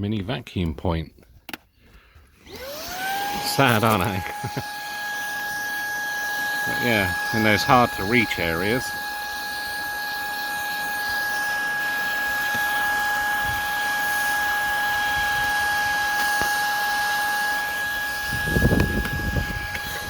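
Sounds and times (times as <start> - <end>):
stick vacuum whining: 2.2 - 20.0.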